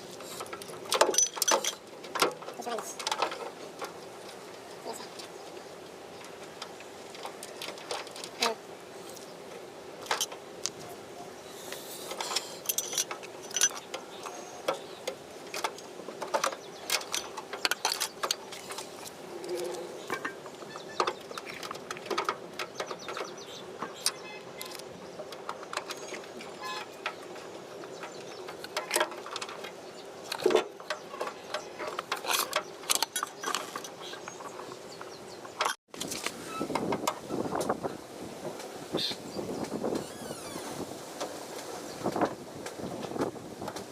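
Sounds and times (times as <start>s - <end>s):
clicks and knocks of hand tools: 0.2s - 5.3s, 11.7s - 37.7s.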